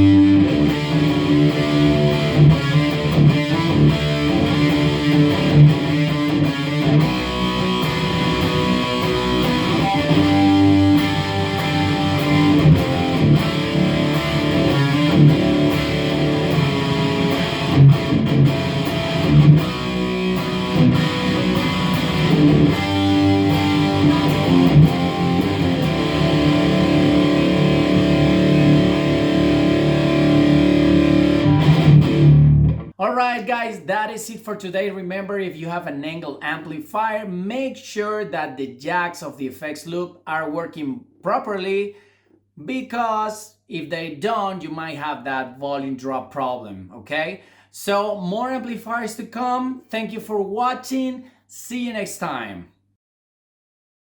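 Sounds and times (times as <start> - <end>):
electric guitar chords and notes: 0.0 - 33.0.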